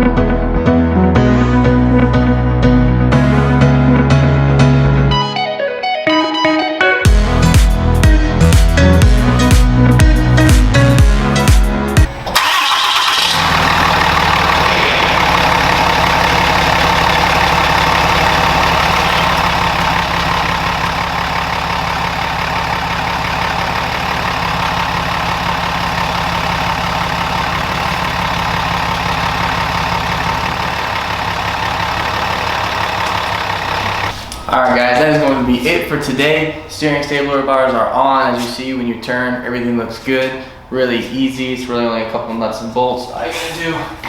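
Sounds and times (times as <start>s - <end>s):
pickup engine starting and idling: 7.1s - 36.7s.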